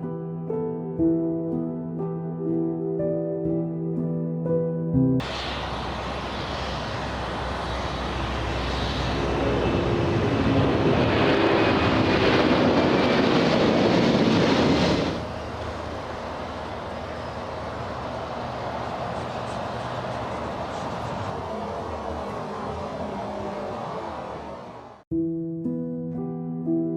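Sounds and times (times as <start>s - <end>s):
aircraft engine noise: 5.2s - 25.0s.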